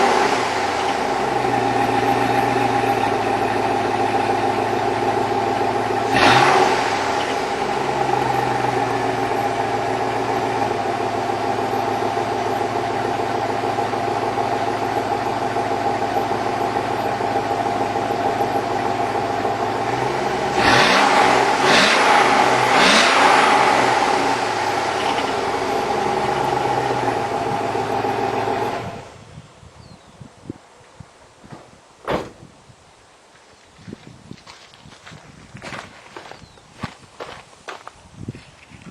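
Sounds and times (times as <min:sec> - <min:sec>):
engine shutting off: 0:00.0 - 0:29.3
engine throttle blips: 0:00.0 - 0:29.3
car engine idling: 0:00.0 - 0:29.6.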